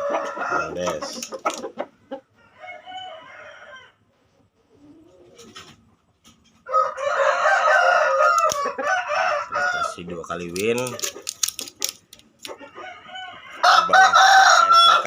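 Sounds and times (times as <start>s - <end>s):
rooster crowing: 0.0s - 1.0s, 2.4s - 4.0s, 6.6s - 10.1s, 12.6s - 15.0s.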